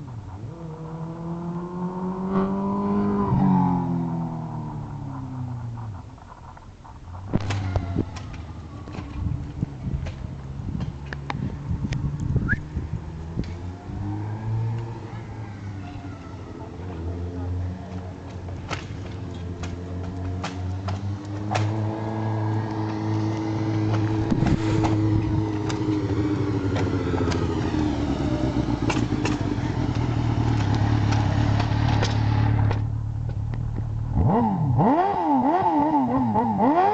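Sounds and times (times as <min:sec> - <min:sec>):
motorcycle throttle blips: 0:00.0 - 0:13.8, 0:17.9 - 0:36.9
motorcycle engine running: 0:16.5 - 0:36.9.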